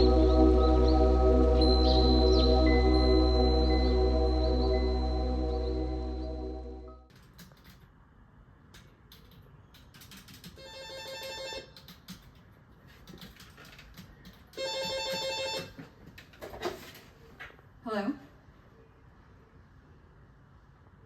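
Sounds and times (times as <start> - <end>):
telephone ringing: 10.6 - 11.8, 14.6 - 15.8.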